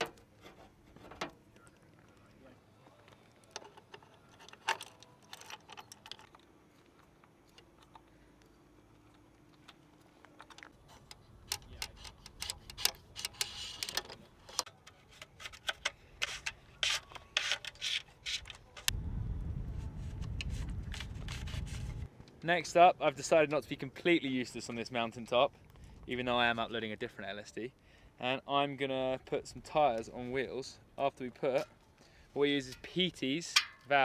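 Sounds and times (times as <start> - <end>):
tools and metal parts clicking: 3.4 - 6.5, 10.4 - 18.9
low rumble: 18.9 - 22.1.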